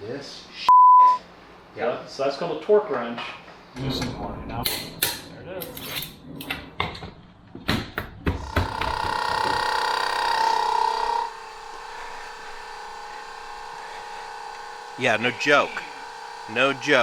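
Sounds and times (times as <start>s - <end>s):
steady pitched hum: 8.5s - 17.0s.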